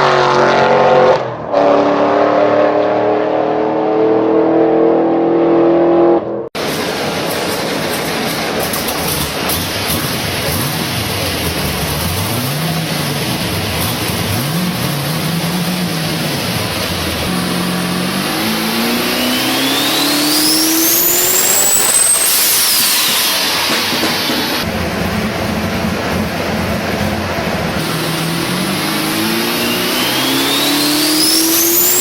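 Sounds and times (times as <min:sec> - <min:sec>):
car engine revving: 0:00.0 - 0:32.0
turbo whine: 0:08.8 - 0:26.6, 0:27.7 - 0:32.0
hiss of blow-off: 0:18.2 - 0:24.6, 0:27.8 - 0:32.0.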